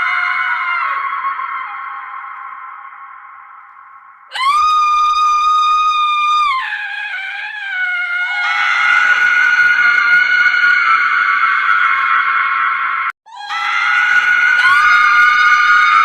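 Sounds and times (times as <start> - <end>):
woman screaming: 4.3 - 11.2, 13.3 - 16.0.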